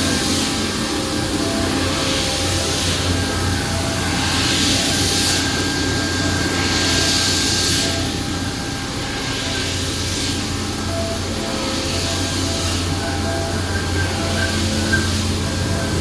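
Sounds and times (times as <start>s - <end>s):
machine hiss: 0.0s - 16.0s
machines humming: 0.0s - 16.0s.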